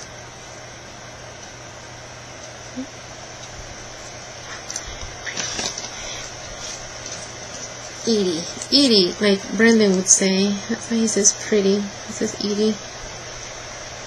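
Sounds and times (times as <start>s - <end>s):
background hiss: 0.0s - 14.0s
faint low hum: 0.0s - 14.0s
handling clicks and rustles: 3.4s - 8.7s.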